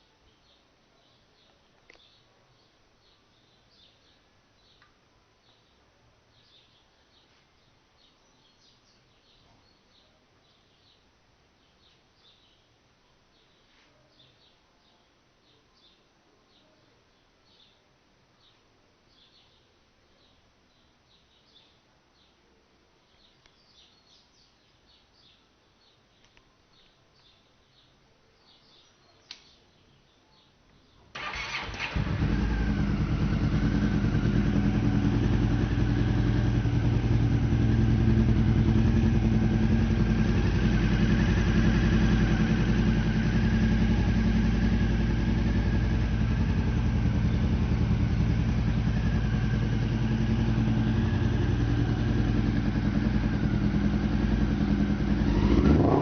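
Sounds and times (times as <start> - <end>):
faint bird chirps: 0.0 - 56.0
click: 26.2 - 26.5, 29.2 - 29.5
motorcycle engine starting and idling: 31.1 - 56.0.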